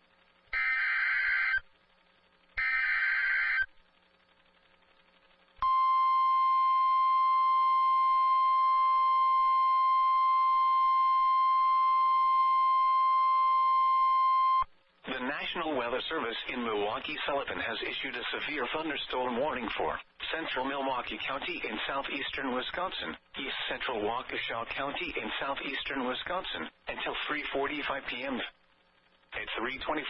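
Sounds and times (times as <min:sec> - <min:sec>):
steady warning alarm tone: 0:00.5 - 0:01.6, 0:02.6 - 0:03.7, 0:05.6 - 0:14.6
buzzy digital data screech: 0:00.6 - 0:01.6, 0:02.6 - 0:03.7.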